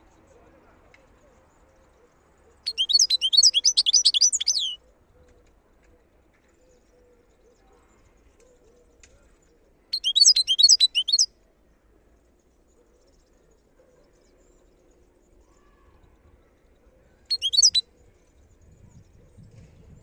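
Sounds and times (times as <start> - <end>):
bird twittering song: 2.6 - 4.8, 9.9 - 11.3, 16.6 - 17.8.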